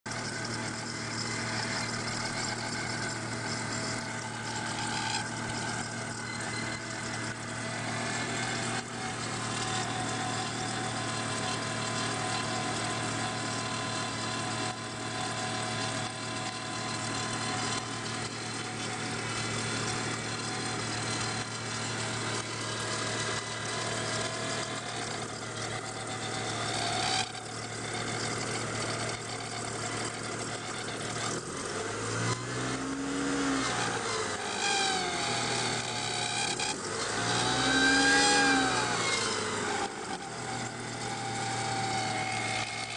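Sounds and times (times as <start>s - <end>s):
car engine idling: 0.1s - 31.7s
steady water pump whine: 0.1s - 42.9s.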